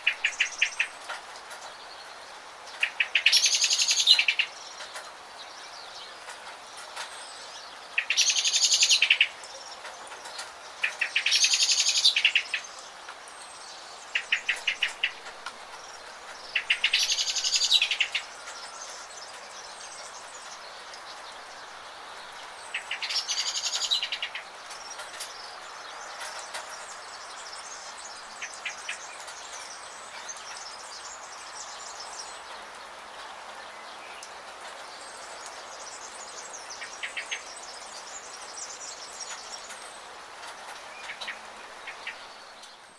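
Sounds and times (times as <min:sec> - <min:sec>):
rain hissing: 0:00.0 - 0:42.9
songbird trilling: 0:02.8 - 0:04.7, 0:08.0 - 0:09.5, 0:14.1 - 0:15.3, 0:16.0 - 0:19.0, 0:22.7 - 0:24.5.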